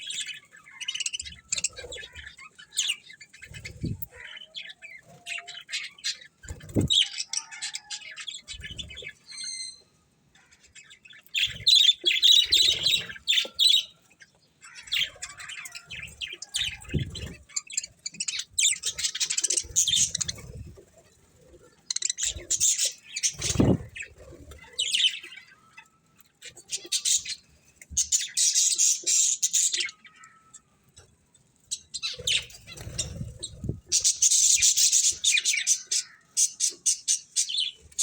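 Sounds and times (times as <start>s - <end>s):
budgerigars chirping: 14.7s - 20.7s.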